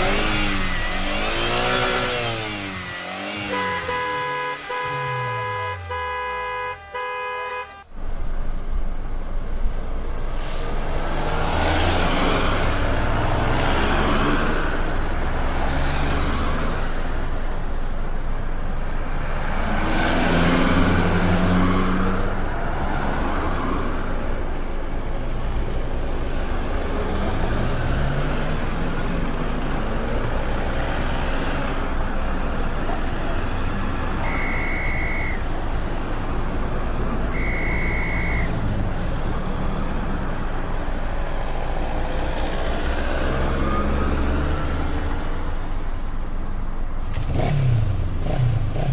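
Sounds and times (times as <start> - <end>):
road traffic passing: 0.0 - 48.9
short high beeps: 34.2 - 35.4, 37.3 - 38.5.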